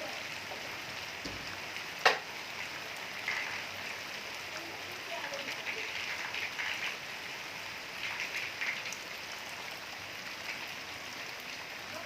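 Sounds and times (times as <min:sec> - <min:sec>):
raindrops ticking: 0:00.0 - 0:09.5
steady rain hiss: 0:00.0 - 0:12.0.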